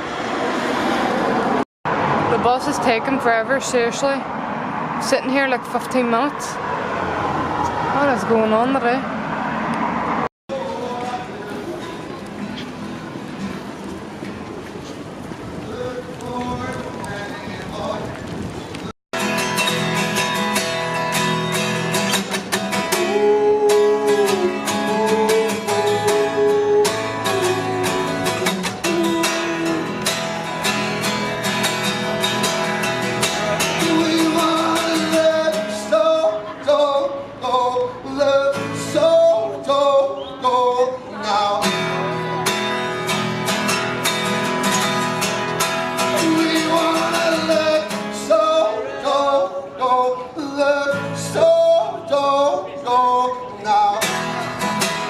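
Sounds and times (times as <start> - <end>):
song with acoustic guitar and singing: 10.5 - 18.2, 19.2 - 55.0.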